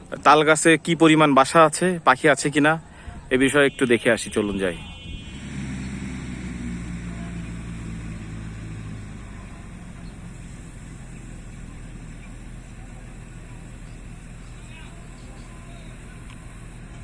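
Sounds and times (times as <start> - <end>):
outdoor background noise: 0.0 - 17.0
engine running: 5.2 - 17.0.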